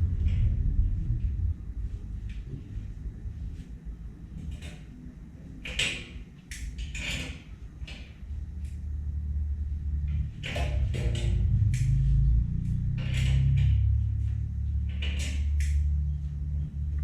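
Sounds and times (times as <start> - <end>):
steady low hum: 0.0 - 17.0
sharp knocks and rattles: 12.8 - 16.6.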